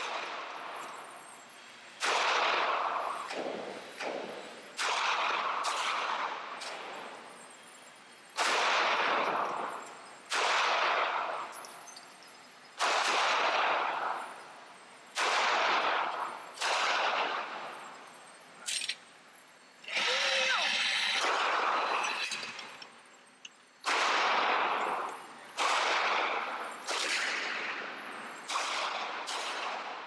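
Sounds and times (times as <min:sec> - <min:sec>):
handgun shots with echo: 0:08.4 - 0:11.5, 0:12.8 - 0:14.2, 0:15.2 - 0:17.7, 0:23.8 - 0:30.0.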